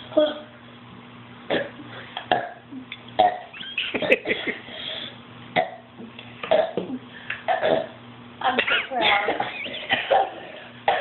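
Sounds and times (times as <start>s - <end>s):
boy burping: 1.5s - 4.5s, 6.5s - 11.0s.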